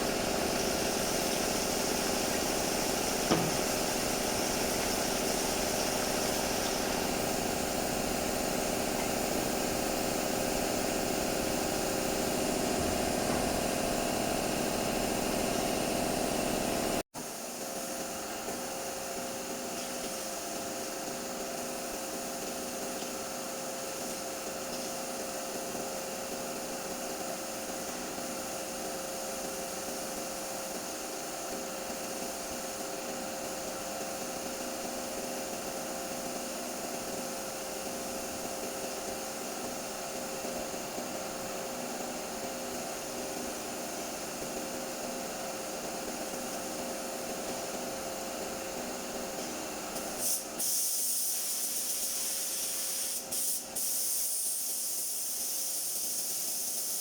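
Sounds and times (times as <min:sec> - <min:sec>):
machine hum: 0:00.0 - 0:17.0
paint spray gun hissing: 0:00.0 - 0:17.0, 0:50.0 - 0:57.0.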